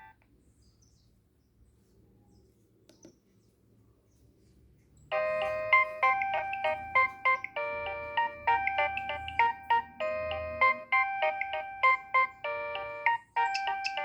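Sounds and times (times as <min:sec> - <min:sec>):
polyphonic phone ringtone: 0:05.1 - 0:14.0.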